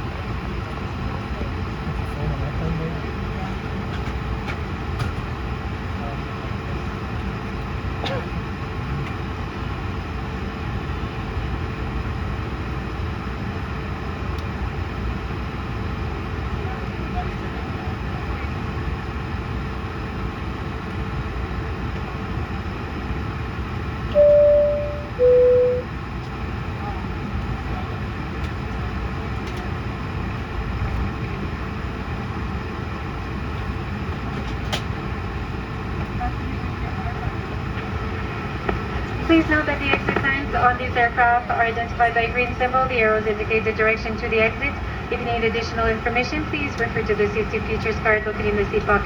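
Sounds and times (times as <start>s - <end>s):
airliner cabin low rumble: 0.0s - 49.0s
faint steady hum: 24.1s - 27.0s.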